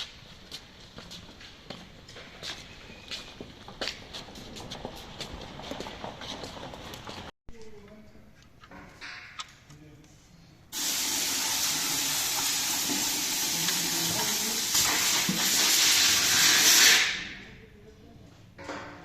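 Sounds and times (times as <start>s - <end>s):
loud steady hiss: 10.8s - 17.4s.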